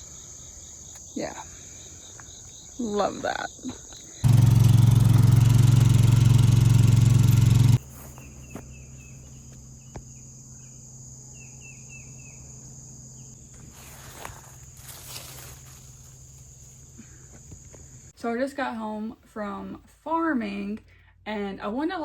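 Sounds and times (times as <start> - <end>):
high insect drone: 0.0 - 18.1
loud engine running: 4.2 - 7.8.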